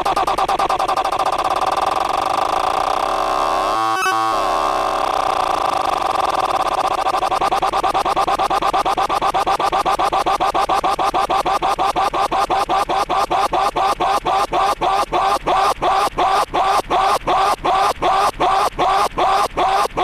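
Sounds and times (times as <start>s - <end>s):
cartoon scream stuttering loop: 3.0s - 5.4s.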